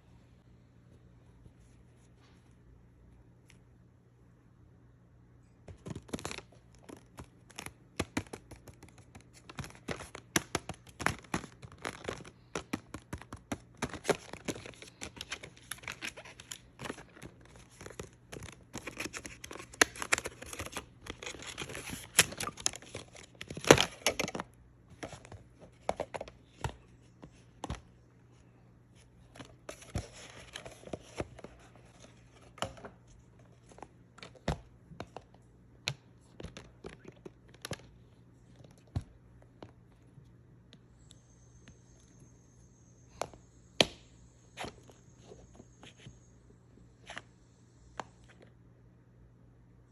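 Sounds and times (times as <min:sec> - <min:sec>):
cardboard and plastic crinkling: 0:05.7 - 0:27.8, 0:29.3 - 0:35.2.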